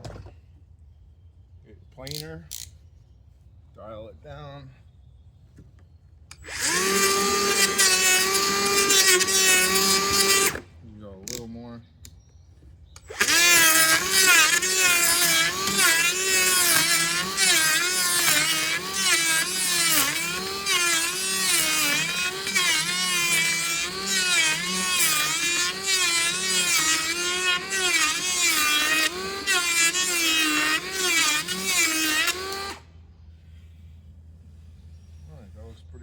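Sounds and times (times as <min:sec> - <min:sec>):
electric hand planer cutting wood: 0:06.3 - 0:10.6, 0:13.0 - 0:32.8.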